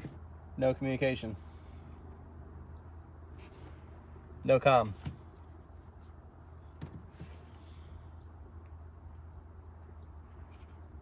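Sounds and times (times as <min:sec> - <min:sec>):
steady low hum: 0:00.0 - 0:11.0
faint bird chirps: 0:02.6 - 0:04.0.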